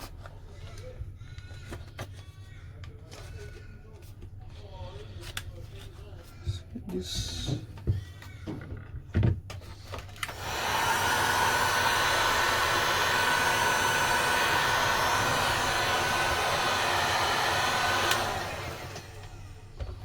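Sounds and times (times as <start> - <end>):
heat gun blowing: 10.2 - 19.6.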